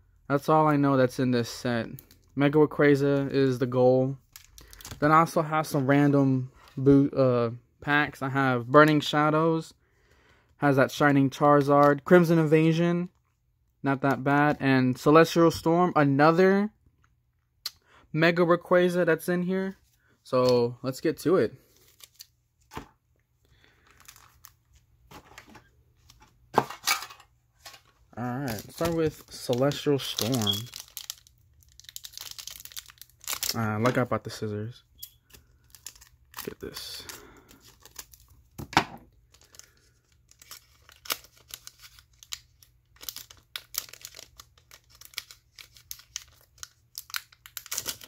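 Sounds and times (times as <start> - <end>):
foil wrappers crinkling: 4.3 - 5.1, 23.6 - 24.6, 26.6 - 34.4, 35.0 - 48.0.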